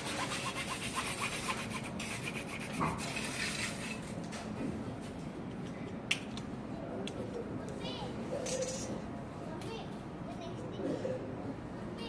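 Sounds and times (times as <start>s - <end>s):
rasping filing strokes: 0.0s - 4.0s.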